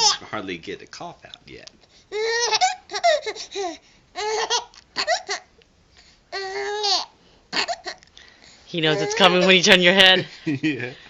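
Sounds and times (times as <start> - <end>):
baby laughing: 0.0 - 0.2, 2.1 - 5.5, 6.4 - 8.1, 8.8 - 9.8.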